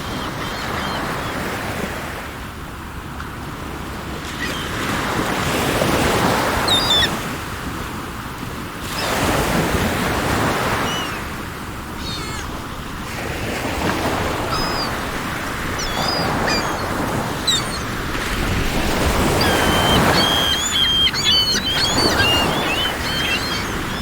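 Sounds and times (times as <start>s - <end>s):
sea waves washing ashore: 0.0s - 24.0s
short bird chirps: 19.4s - 24.0s.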